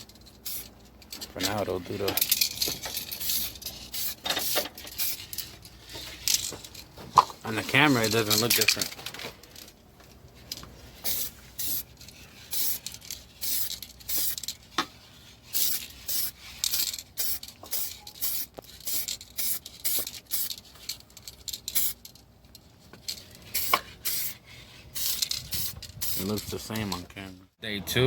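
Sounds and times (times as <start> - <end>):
spray can hissing: 0.4 - 0.7, 3.2 - 5.2, 11.0 - 11.9, 12.5 - 14.4, 15.5 - 20.5, 23.5 - 24.4, 25.0 - 26.3.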